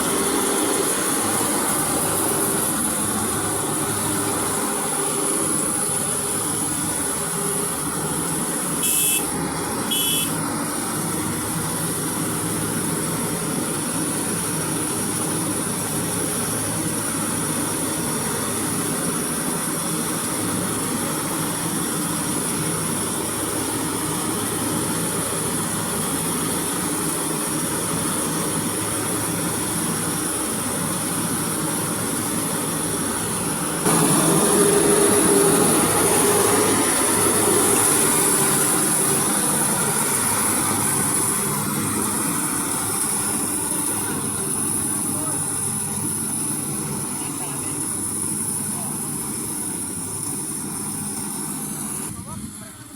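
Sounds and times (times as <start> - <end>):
combine harvester running: 0.0 - 52.9
short high-pitched sounds: 8.8 - 10.4.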